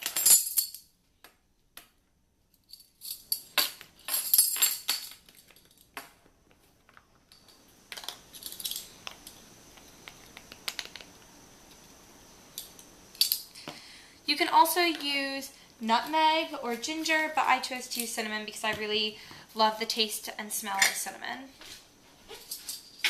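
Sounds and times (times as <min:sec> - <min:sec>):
faint steady hiss: 0:00.0 - 0:23.0
metal spoons jingling: 0:02.6 - 0:05.8.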